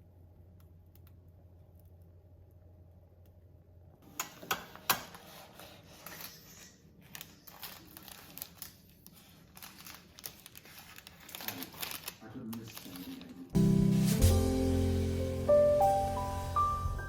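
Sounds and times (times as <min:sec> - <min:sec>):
packaging crinkling: 0:05.7 - 0:13.5.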